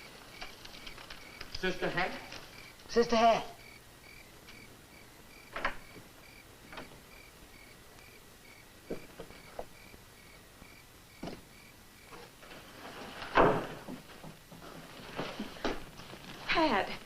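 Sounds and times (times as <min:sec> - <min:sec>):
crickets chirping: 0:00.0 - 0:17.0
door thump: 0:05.5 - 0:06.0, 0:11.2 - 0:11.5, 0:13.4 - 0:14.0.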